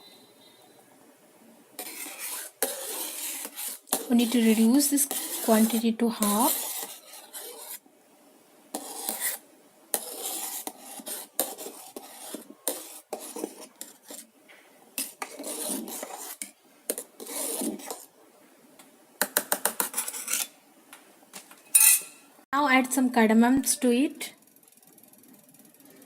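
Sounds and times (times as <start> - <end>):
metal spoon scraping a kettle: 19.8 - 20.5, 21.8 - 22.2.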